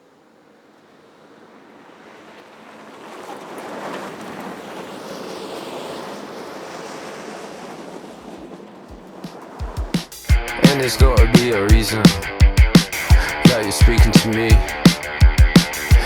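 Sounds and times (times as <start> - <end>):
steady rushing noise: 8.2 - 16.0.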